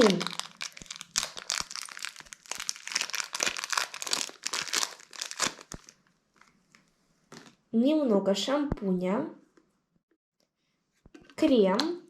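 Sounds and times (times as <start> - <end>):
plastic packaging crinkling: 0.0 - 7.6.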